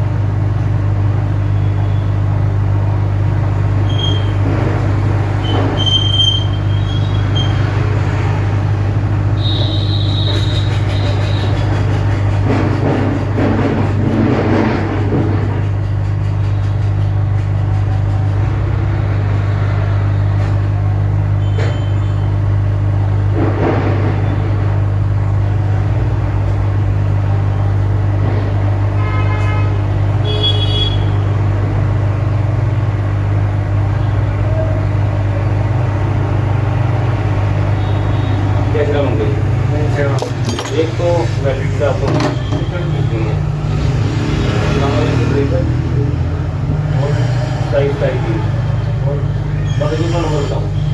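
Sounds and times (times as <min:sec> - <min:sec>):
pitched honk-like tones: 0:09.3 - 0:11.6, 0:29.0 - 0:31.4, 0:37.6 - 0:38.7.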